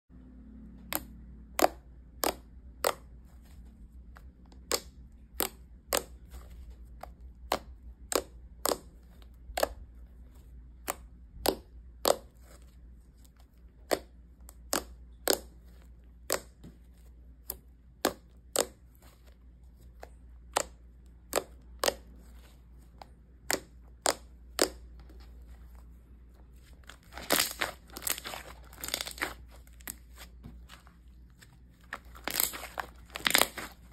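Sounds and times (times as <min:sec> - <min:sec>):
slime crackling: 0:00.9 - 0:33.9
slime popping and clicking: 0:27.1 - 0:30.0, 0:32.2 - 0:33.8.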